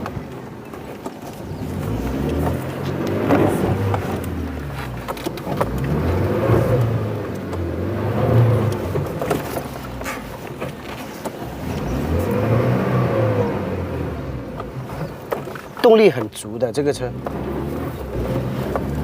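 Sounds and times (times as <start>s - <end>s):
engine revving under load: 1.4s - 10.3s, 11.4s - 15.4s, 16.9s - 19.0s.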